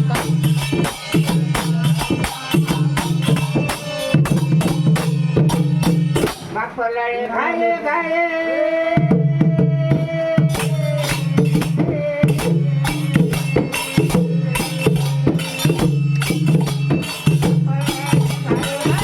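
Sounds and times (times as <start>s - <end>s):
hand percussion strokes: 0.0s - 6.6s, 9.0s - 19.0s.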